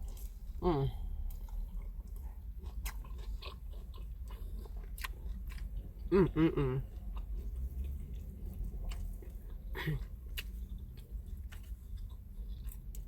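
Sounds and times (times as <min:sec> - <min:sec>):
close chewing mouth sounds: 0:00.0 - 0:13.0
hummed wordless vocal: 0:06.1 - 0:06.9.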